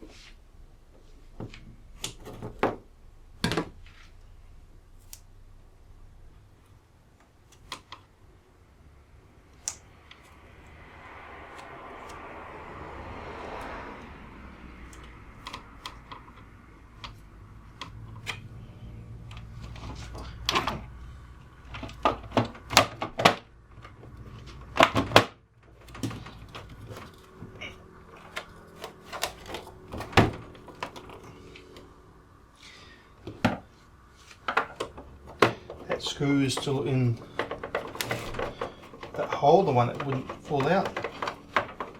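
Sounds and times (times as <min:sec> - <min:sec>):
plastic casing clicks and knocks: 0:36.6 - 0:41.9.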